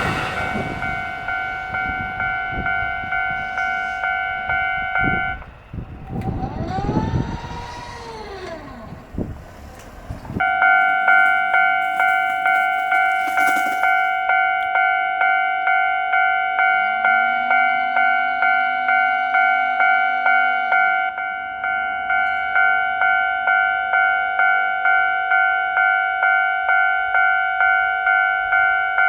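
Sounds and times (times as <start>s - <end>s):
train motor whine: 0.0s - 14.8s
electric train rumbling past: 0.0s - 29.0s
railroad crossing alarm ringing: 0.0s - 29.0s.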